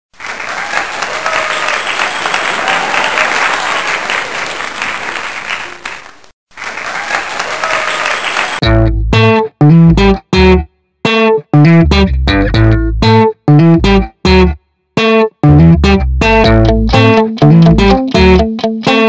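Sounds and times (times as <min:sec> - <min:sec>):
crowd applauding: 0:00.1 - 0:08.6
cheering voices: 0:00.2 - 0:08.6.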